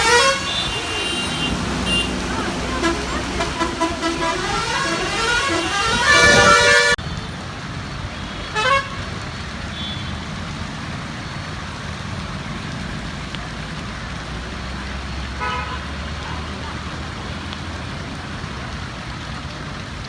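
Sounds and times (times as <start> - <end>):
vehicle engine accelerating: 0.0 - 7.0
vehicle horn toot: 0.0 - 7.0, 15.4 - 15.8
traffic noise: 0.0 - 20.0.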